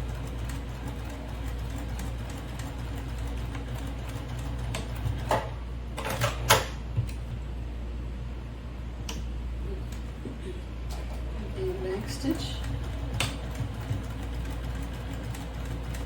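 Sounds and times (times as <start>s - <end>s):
sewing machine running: 0.0s - 6.5s, 11.0s - 16.0s.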